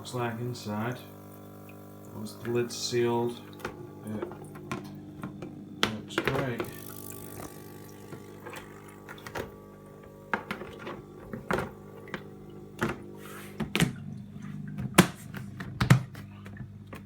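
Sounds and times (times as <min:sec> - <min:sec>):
electric air pump humming: 0:00.0 - 0:17.0
plastic tub clicks and knocks: 0:03.6 - 0:06.8, 0:08.1 - 0:13.0, 0:14.8 - 0:17.0.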